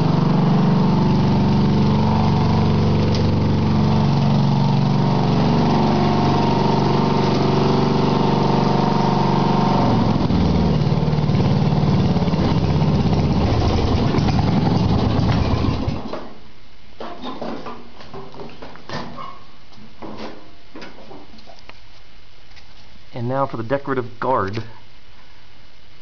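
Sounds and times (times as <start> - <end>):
lawn tractor engine running: 0.0 - 16.1.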